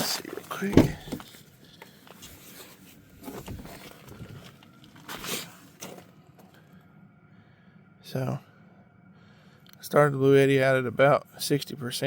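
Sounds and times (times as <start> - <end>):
rustling of handling gear: 0.0 - 6.7.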